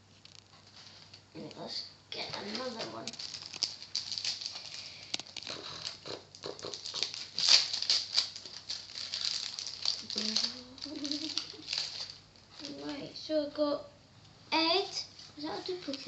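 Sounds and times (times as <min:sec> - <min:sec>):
foil wrapper tearing and crinkling: 0:02.5 - 0:13.0.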